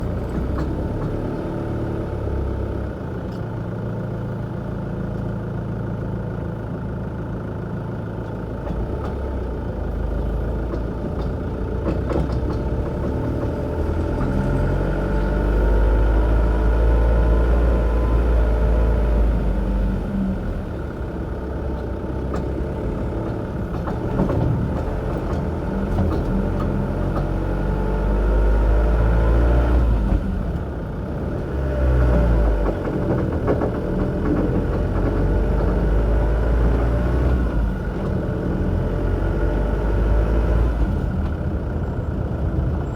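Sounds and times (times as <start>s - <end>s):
sharp knocks from wheels: 0.0s - 2.3s, 8.0s - 17.8s, 20.4s - 39.4s
diesel van engine rumbling: 0.0s - 42.9s.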